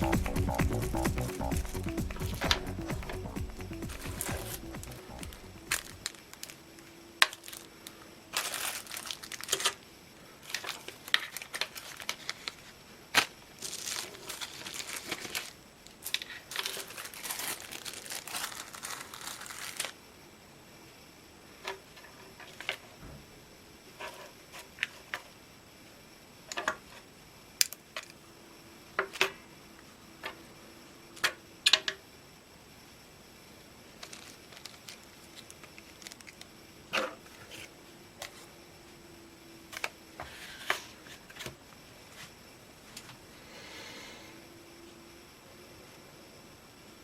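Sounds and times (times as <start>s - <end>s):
faint steady tone: 24.8s - 47.0s.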